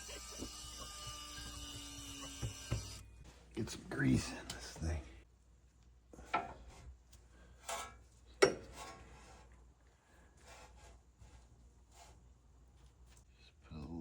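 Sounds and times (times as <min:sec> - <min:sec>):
rubbing and scraping handling noises: 0:06.2 - 0:13.3.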